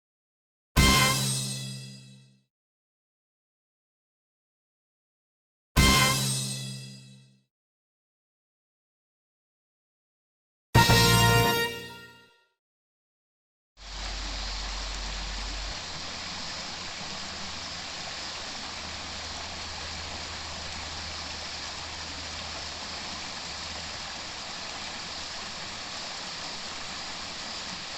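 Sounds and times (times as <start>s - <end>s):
stream flowing: 13.8s - 27.9s.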